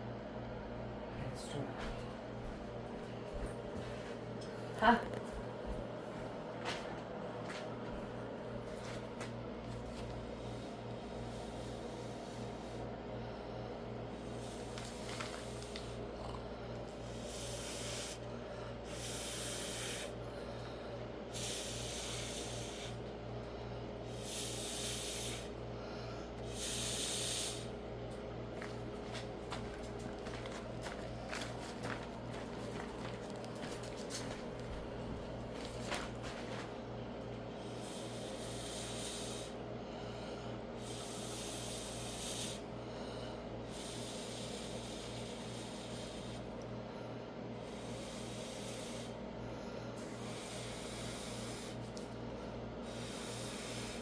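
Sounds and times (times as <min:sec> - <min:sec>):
breath puffs through a straw: 0:14.2 - 0:16.5, 0:17.1 - 0:23.0, 0:24.1 - 0:27.8, 0:37.6 - 0:46.6, 0:47.6 - 0:52.2, 0:52.8 - 0:54.0.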